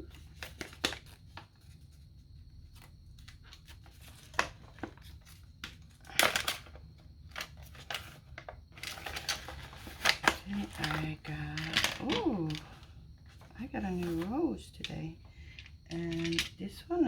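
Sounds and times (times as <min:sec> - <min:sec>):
packaging rustling: 0:02.7 - 0:14.3.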